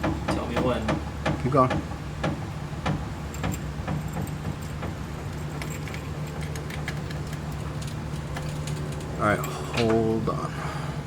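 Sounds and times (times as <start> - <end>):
low machine hum: 0.0 - 11.0.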